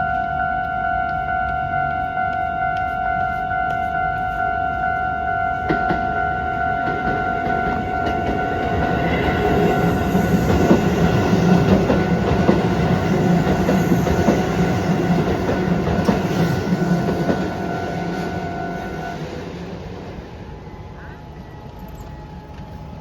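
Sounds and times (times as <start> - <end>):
crossing warning bell ringing: 0.0 - 23.0
train wheels clattering over rails: 5.7 - 20.2.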